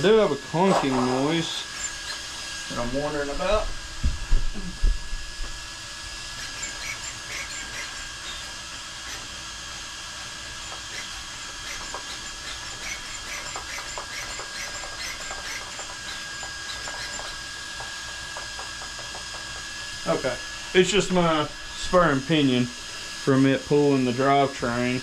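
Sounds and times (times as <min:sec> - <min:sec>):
gears clicking and ticking: 0:06.3 - 0:19.8.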